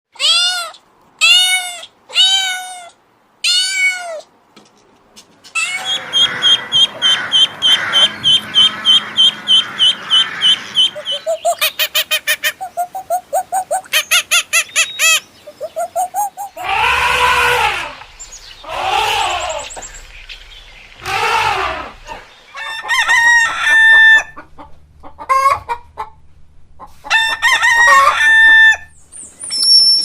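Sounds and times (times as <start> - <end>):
cat meowing: 0.2 - 4.3
lower repeated animal calls: 5.6 - 11.6, 14.8 - 20.1, 20.9 - 22.3
high chirping calls: 5.6 - 22.6, 28.9 - 30.0.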